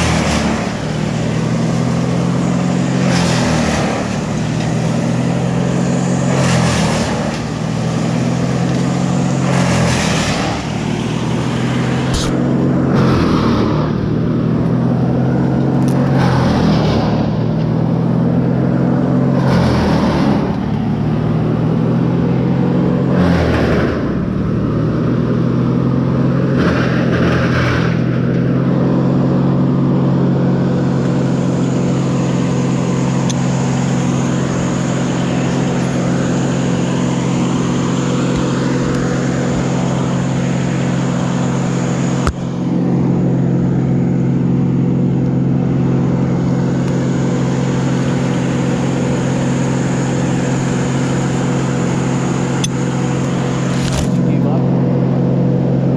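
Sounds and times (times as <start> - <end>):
large engine running: 0.0 - 55.9.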